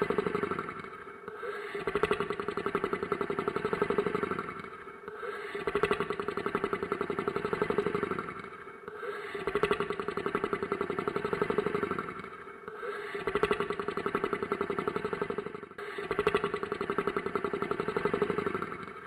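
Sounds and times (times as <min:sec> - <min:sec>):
monster snoring with fluttering rattle: 0:00.0 - 0:19.0.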